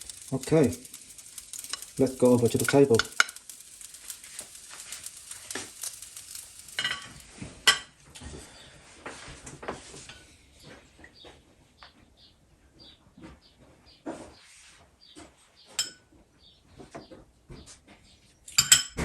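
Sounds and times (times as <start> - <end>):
utensils and dishes clinking: 0.0 - 8.0, 18.5 - 19.0
wok sizzling: 0.0 - 8.0.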